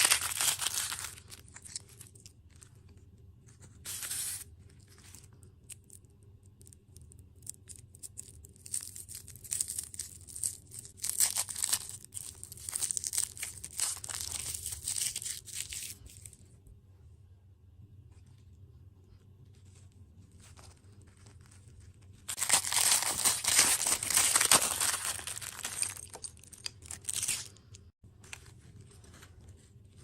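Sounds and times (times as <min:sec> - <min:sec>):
plastic packaging crinkling: 0:00.0 - 0:02.6, 0:08.4 - 0:16.4, 0:20.4 - 0:29.7.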